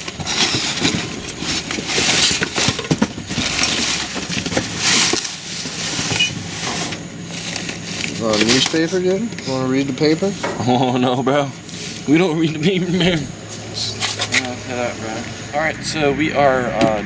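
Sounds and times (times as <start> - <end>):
items clicking and knocking: 0.0 - 10.8, 13.1 - 14.6
plastic bags rustling: 0.0 - 15.5.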